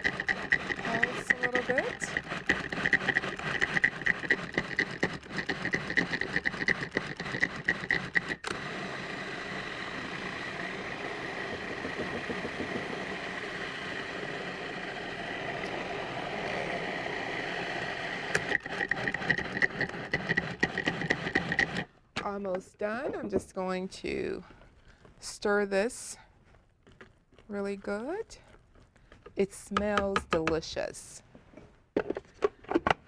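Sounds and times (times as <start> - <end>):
food processor motor chopping: 0.0 - 21.9.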